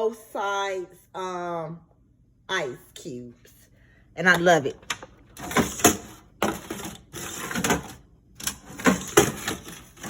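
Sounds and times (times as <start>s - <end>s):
ice cubes clattering in a bin: 5.4s - 10.0s.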